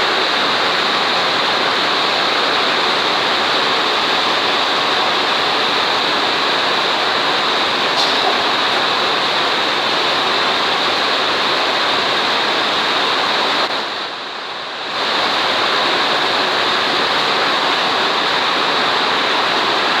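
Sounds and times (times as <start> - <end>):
heavy rain pouring: 0.0 - 20.0.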